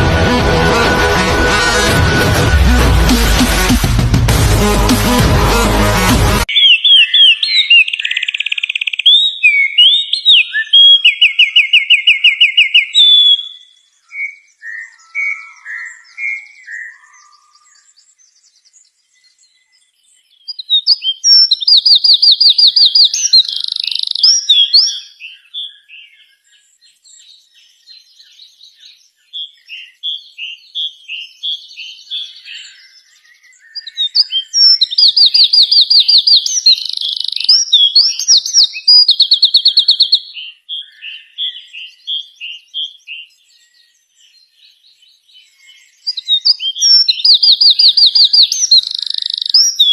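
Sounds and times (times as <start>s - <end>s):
songbird trilling: 6.5s - 18.0s, 20.4s - 26.5s, 28.0s - 49.9s
bird chirping softly: 6.5s - 49.9s.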